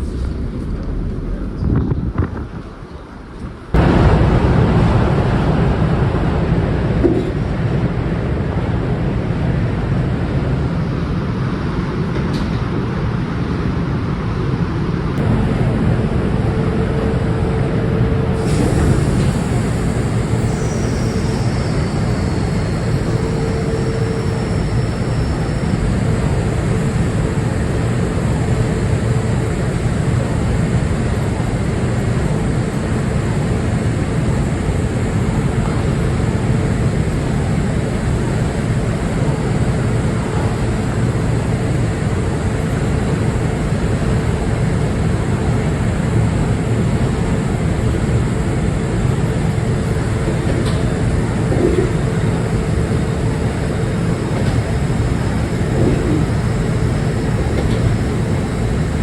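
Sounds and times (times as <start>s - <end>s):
faint steady hum: 15.2s - 32.8s.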